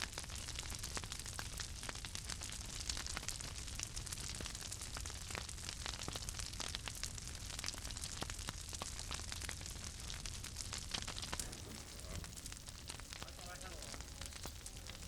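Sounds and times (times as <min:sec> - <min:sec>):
bonfire crackling: 0:00.0 - 0:15.0
steady low rumble: 0:11.3 - 0:15.0.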